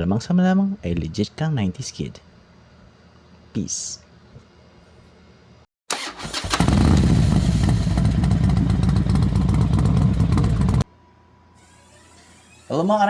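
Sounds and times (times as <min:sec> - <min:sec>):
engine cranking: 0:05.9 - 0:10.8
engine running with rapid pulsing: 0:06.0 - 0:10.8.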